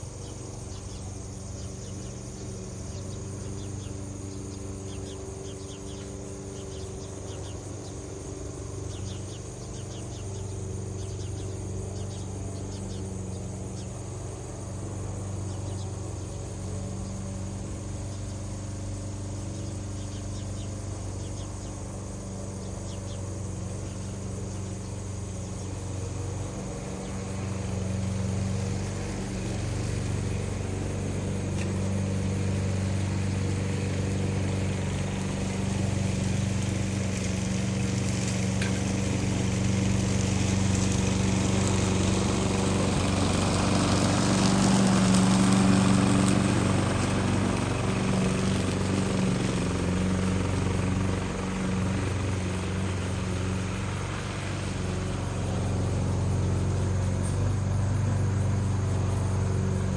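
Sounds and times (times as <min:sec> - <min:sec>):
insects chirping in trills: 0:00.0 - 0:49.4, 0:54.8 - 0:59.9.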